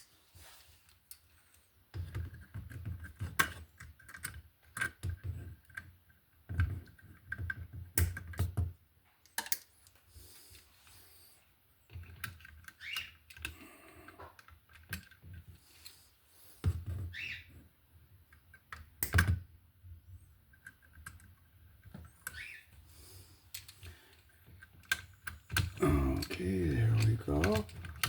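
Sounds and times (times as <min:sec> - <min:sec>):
hand tools clicking and scraping wire: 0:00.8 - 0:08.5, 0:11.9 - 0:16.1, 0:23.4 - 0:28.0.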